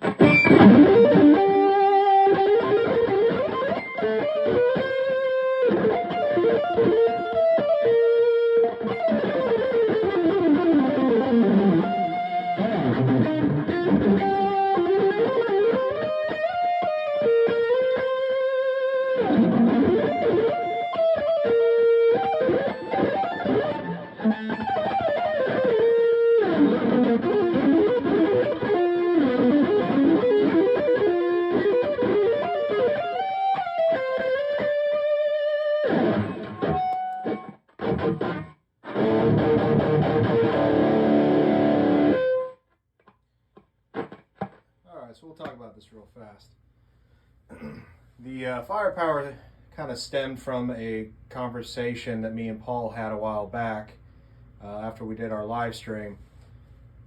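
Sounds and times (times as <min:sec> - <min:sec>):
distorted electric guitar lead: 0:00.0 - 0:42.6, 0:44.0 - 0:44.6.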